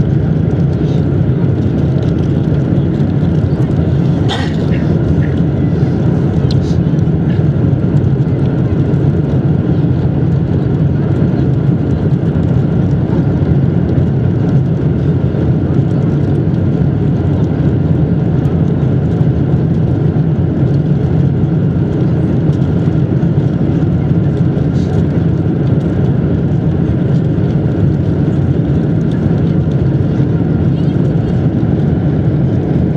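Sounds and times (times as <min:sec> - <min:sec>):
jet engine drone in cabin: 0:00.0 - 0:32.9.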